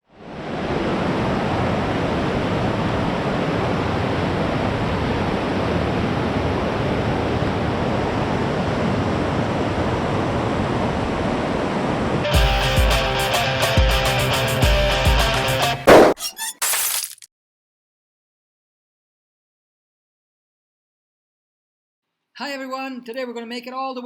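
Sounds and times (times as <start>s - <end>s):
music: 12.3s - 15.9s.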